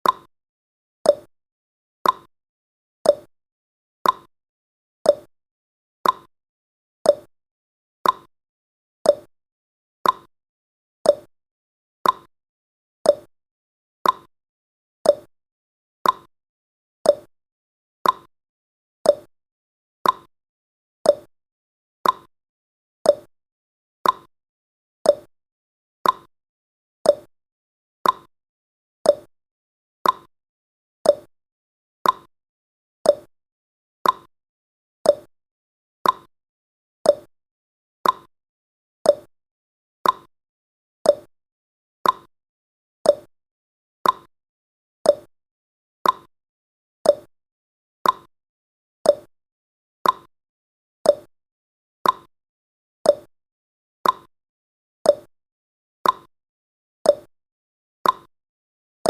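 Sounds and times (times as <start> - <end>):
timer ticking: 0.0 - 0.3, 1.1 - 1.3, 2.0 - 2.3, 3.1 - 3.3, 4.0 - 4.3, 5.1 - 5.3, 6.0 - 6.3, 7.1 - 7.3, 8.0 - 8.3, 9.1 - 9.3, 10.0 - 10.3, 11.1 - 11.3, 12.0 - 12.3, 13.1 - 13.3, 14.0 - 14.3, 15.1 - 15.3, 16.0 - 16.3, 17.1 - 17.3, 18.0 - 18.3, 19.1 - 19.3, 20.0 - 20.3, 21.1 - 21.3, 22.0 - 22.3, 23.1 - 23.3, 24.0 - 24.3, 25.1 - 25.3, 26.0 - 26.3, 27.1 - 27.3, 28.0 - 28.3, 29.1 - 29.3, 30.0 - 30.3, 31.0 - 31.3, 32.0 - 32.3, 33.1 - 33.3, 34.0 - 34.3, 35.1 - 35.3, 36.0 - 36.3, 37.1 - 37.3, 38.0 - 38.3, 39.1 - 39.3, 40.0 - 40.3, 41.1 - 41.3, 42.0 - 42.3, 43.1 - 43.3, 44.0 - 44.3, 45.1 - 45.3, 46.0 - 46.3, 47.0 - 47.3, 48.0 - 48.3, 49.1 - 49.3, 50.0 - 50.3, 51.1 - 51.3, 52.0 - 52.3, 53.1 - 53.3, 54.0 - 54.3, 55.1 - 55.3, 56.0 - 56.3, 57.1 - 57.3, 58.0 - 58.3.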